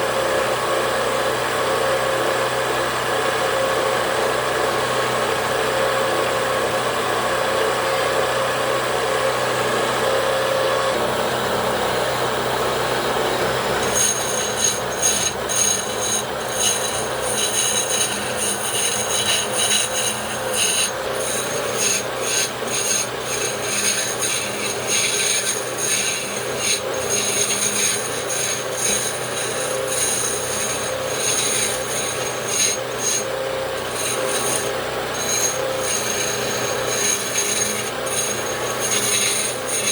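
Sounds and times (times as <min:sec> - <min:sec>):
wood lathe motor hum: 0:08.4 - 0:39.9
turning tool scraping wood: 0:13.3 - 0:39.9.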